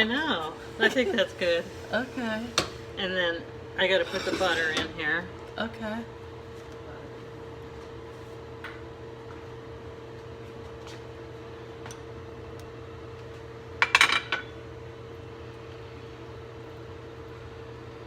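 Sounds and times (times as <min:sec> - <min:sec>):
steady hum: 0:00.0 - 0:10.5.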